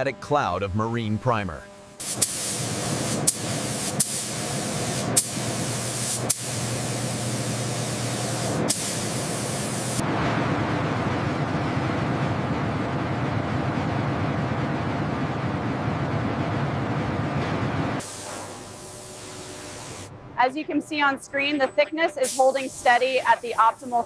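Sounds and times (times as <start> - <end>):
low machine rumble: 0.0 - 2.0, 4.6 - 18.0
paint spraying hiss: 2.0 - 10.0, 18.0 - 20.1, 22.2 - 24.0.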